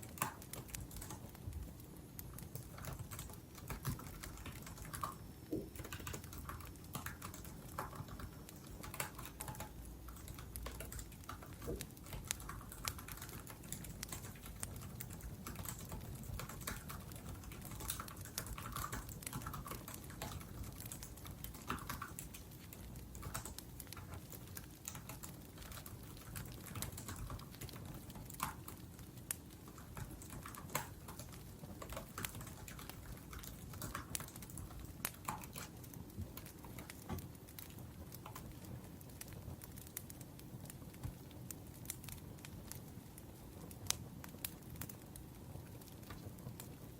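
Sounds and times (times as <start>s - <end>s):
laptop keyboard typing: 0.0s - 38.6s
wood fire crackling: 0.0s - 46.9s.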